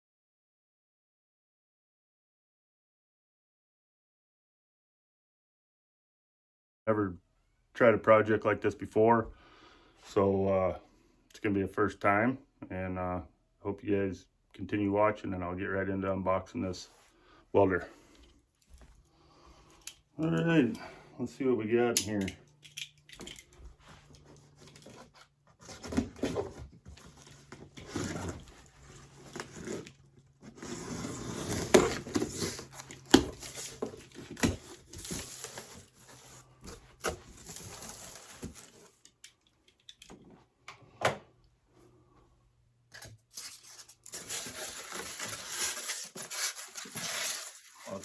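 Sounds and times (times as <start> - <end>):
cardboard and styrofoam rustling: 23.6 - 39.0, 43.3 - 48.0.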